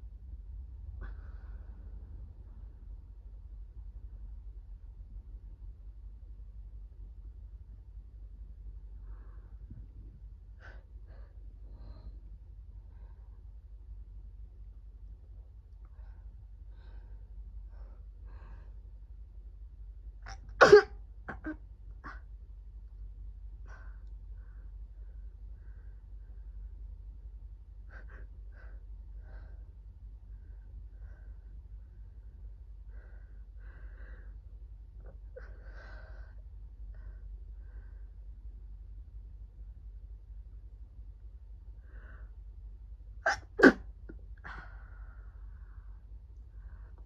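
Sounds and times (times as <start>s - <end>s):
person sneezing: 20.3s - 21.6s, 43.3s - 43.9s.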